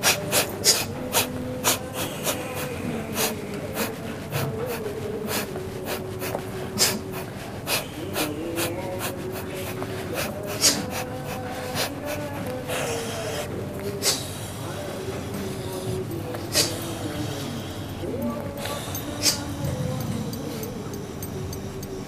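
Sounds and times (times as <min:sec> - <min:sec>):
person snorting sharp nasal breaths: 0:00.0 - 0:14.5, 0:16.5 - 0:17.6.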